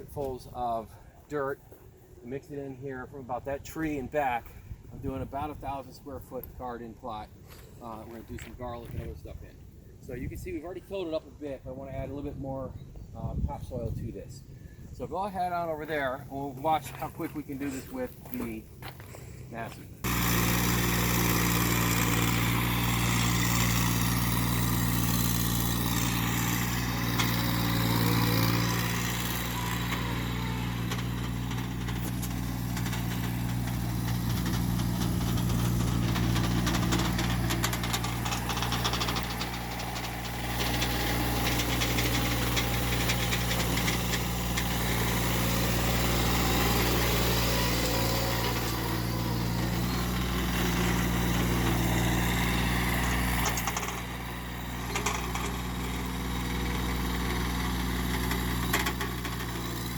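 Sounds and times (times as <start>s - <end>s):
tractor diesel engine running: 15.1s - 59.9s
light rattles: 20.1s - 59.9s.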